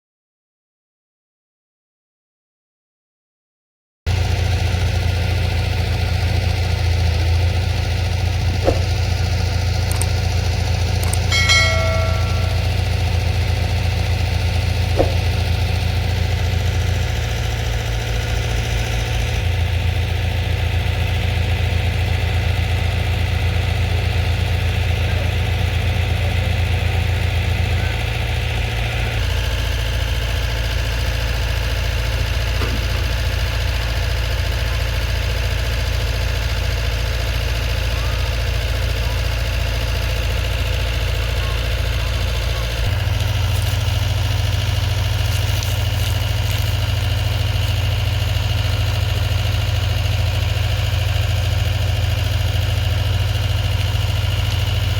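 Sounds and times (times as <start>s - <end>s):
excavator diesel engine running: 4.1s - 54.9s
brief high-pitched tone: 11.0s - 13.0s
light knocks: 15.0s - 15.4s.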